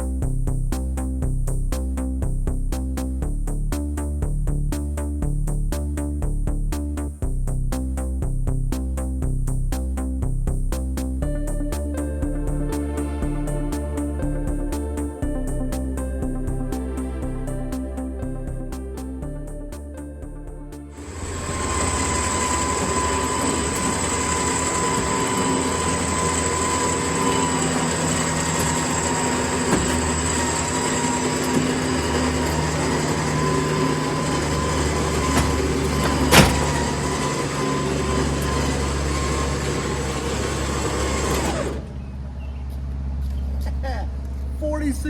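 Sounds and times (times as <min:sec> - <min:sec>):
engine rumble with high whine: 0:00.0 - 0:45.0.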